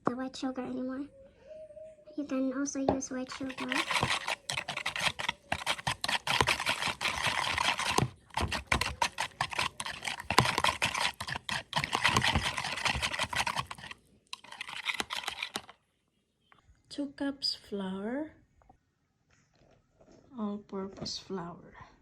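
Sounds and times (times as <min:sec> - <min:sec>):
utensil stirring in mixing bowl: 0:03.2 - 0:15.7.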